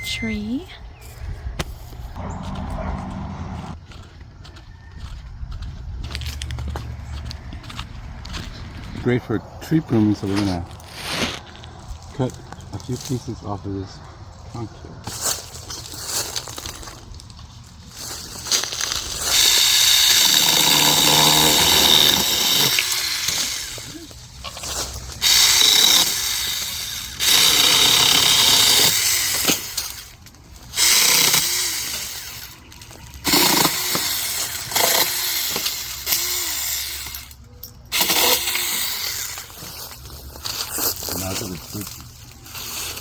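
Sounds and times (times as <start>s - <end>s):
electric chainsaw cutting wood: 18.6s - 39.7s.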